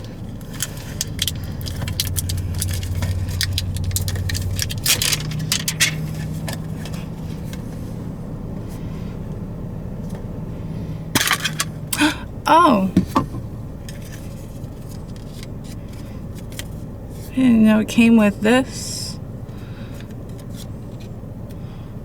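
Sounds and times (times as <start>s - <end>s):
low engine hum: 0.0s - 22.0s
wrapper crinkling as torn open: 0.4s - 6.0s.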